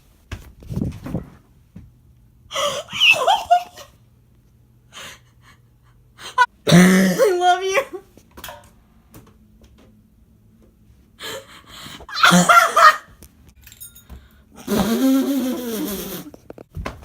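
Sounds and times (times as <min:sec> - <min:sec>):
person squealing: 0:12.1 - 0:13.0, 0:14.6 - 0:16.4
person's drawn-out vocal sound: 0:14.6 - 0:16.4.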